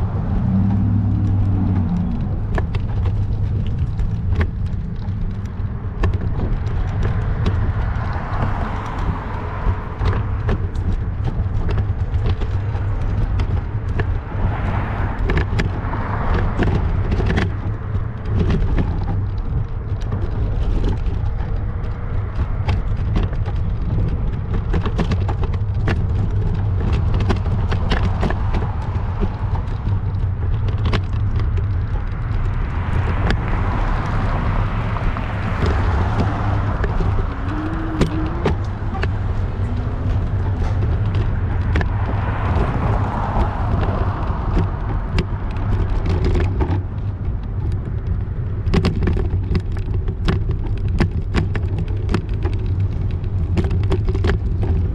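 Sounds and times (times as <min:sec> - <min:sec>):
low rumble: 0:00.0 - 0:48.7
bicycle rattles and clicks: 0:00.0 - 0:54.9
cars passing: 0:00.0 - 0:54.9
wind rushing over microphone: 0:00.0 - 0:54.9.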